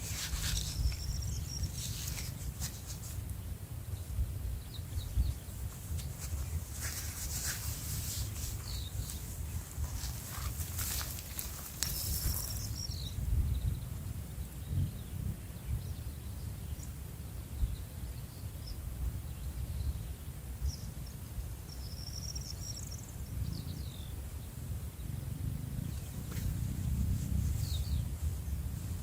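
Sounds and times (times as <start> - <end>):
faint bird chirps: 0.0 - 2.9, 20.7 - 25.2.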